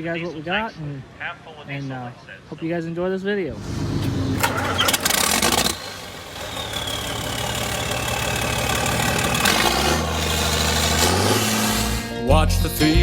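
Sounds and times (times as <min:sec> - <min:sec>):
engine running with knocking: 0:03.8 - 0:12.1
loud clattering: 0:04.1 - 0:12.1.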